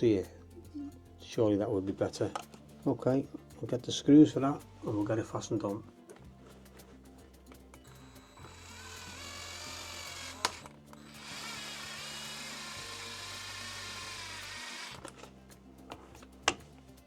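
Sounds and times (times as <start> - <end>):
drill driver whining: 7.8 - 15.3.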